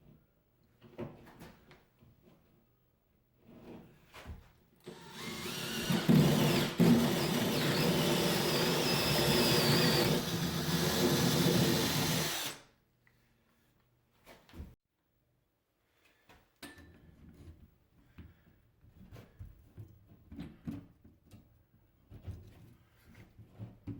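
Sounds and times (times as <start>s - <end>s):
drill cutting with hole saw: 4.9s - 12.7s.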